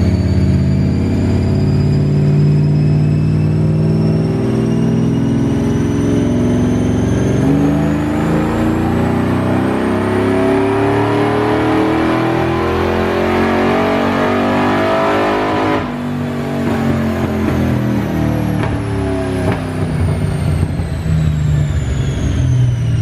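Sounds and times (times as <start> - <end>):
engine revving at full throttle: 0.0 - 23.0.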